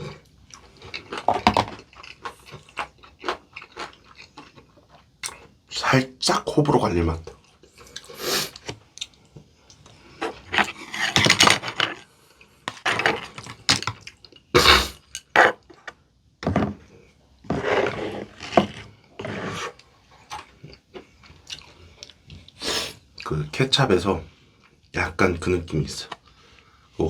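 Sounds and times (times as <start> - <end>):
crunchy chewing: 0.1 - 5.4.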